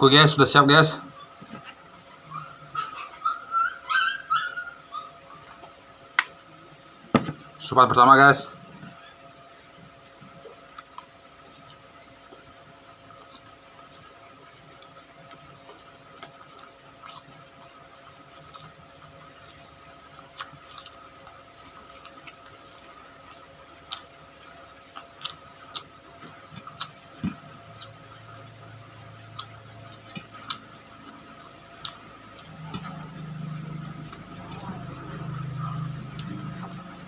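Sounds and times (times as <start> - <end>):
faint steady hum: 0.0 - 37.0
chewing and wet mouth clicks: 20.2 - 28.0, 29.3 - 30.7, 31.8 - 33.0, 36.1 - 36.8.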